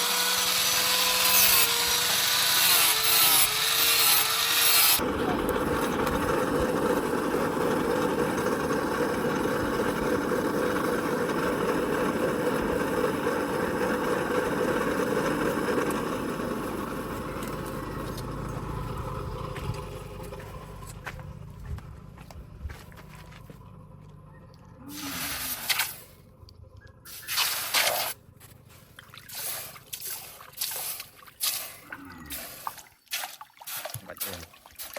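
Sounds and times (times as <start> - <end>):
knife blade scraping on abrasive: 0.0 - 5.0, 25.0 - 26.0, 27.1 - 28.2.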